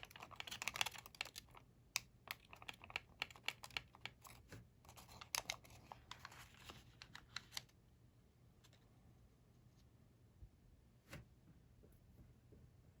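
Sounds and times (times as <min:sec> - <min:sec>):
paper rustle: 0:04.9 - 0:07.7
paper crackling and creasing: 0:04.9 - 0:07.8.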